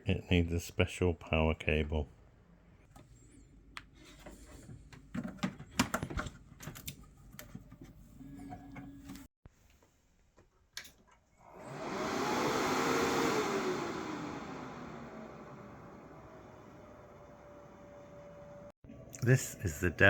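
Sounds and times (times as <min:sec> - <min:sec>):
computer cooling fans whirring: 0:11.6 - 0:20.0.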